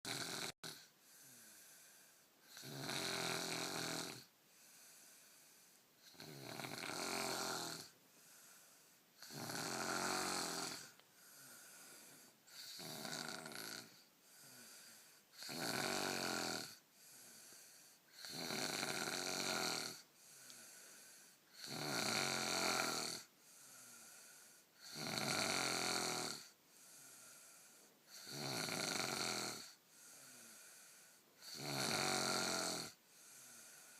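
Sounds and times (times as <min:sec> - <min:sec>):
person snoring: 0:00.1 - 0:33.9
soft breathing: 0:00.8 - 0:02.4, 0:04.4 - 0:06.2, 0:07.9 - 0:09.2, 0:10.4 - 0:12.8, 0:13.9 - 0:15.3, 0:16.8 - 0:18.1, 0:20.0 - 0:21.5, 0:23.4 - 0:24.8, 0:26.6 - 0:28.1, 0:29.7 - 0:31.4, 0:32.9 - 0:33.9.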